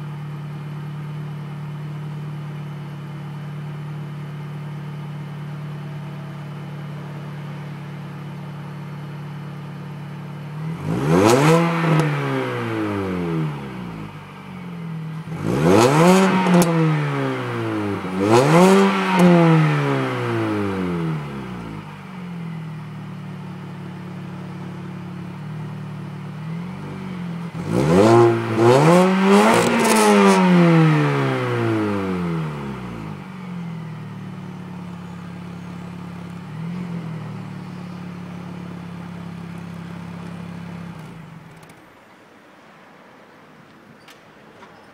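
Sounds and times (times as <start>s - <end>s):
car engine idling and revving: 0.0s - 42.3s.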